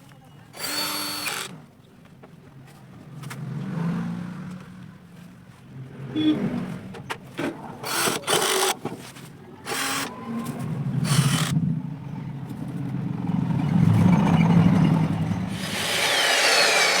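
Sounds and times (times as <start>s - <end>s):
electric chop saw motor humming: 0.6s - 1.6s, 7.9s - 8.8s, 9.7s - 10.1s, 11.0s - 11.5s, 15.5s - 17.0s.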